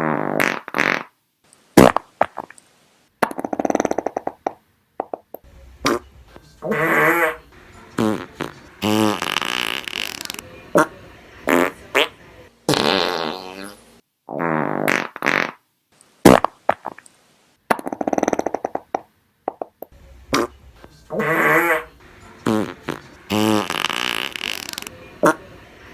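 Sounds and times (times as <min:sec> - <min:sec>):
fart sound effects: 0:00.0 - 0:01.2, 0:01.8 - 0:02.5, 0:03.2 - 0:05.2, 0:05.8 - 0:10.9, 0:11.5 - 0:12.1, 0:12.7 - 0:15.6, 0:16.2 - 0:17.0, 0:17.7 - 0:19.7, 0:20.3 - 0:25.4.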